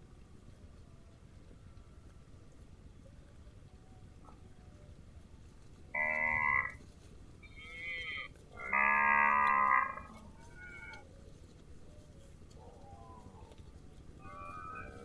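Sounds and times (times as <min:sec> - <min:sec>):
cattle mooing: 0:06.0 - 0:06.8, 0:07.6 - 0:11.0.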